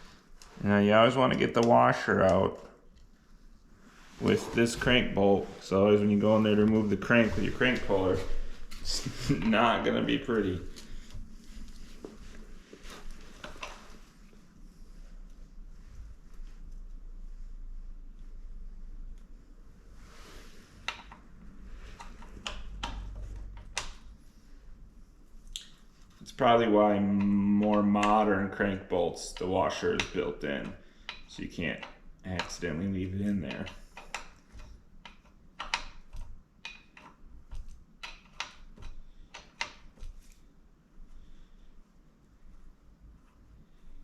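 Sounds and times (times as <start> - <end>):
soft rustle: 2.0 - 22.5, 38.8 - 44.0
hand tools clicking on metal: 29.2 - 32.8.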